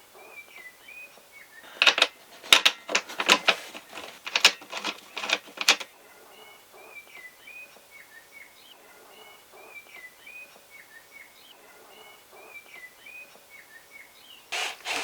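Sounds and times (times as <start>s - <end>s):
rustling noise: 1.7s - 5.9s, 14.5s - 15.0s.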